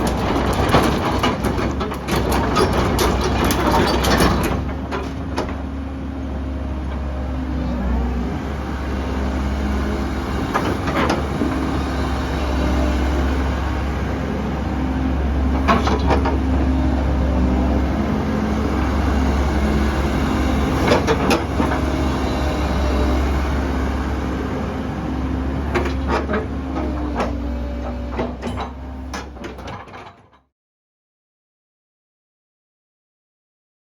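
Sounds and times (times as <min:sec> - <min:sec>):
excavator diesel engine running: 0:00.0 - 0:30.1.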